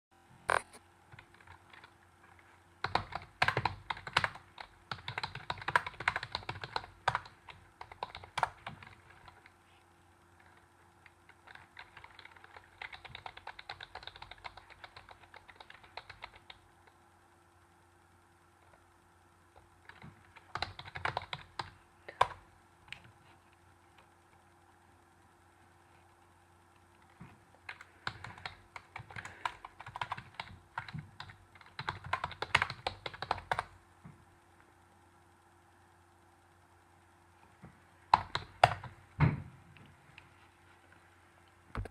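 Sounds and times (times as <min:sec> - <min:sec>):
keyboard typing: 0:00.5 - 0:09.6, 0:10.4 - 0:17.0, 0:19.6 - 0:23.2, 0:27.0 - 0:33.8, 0:38.1 - 0:39.0.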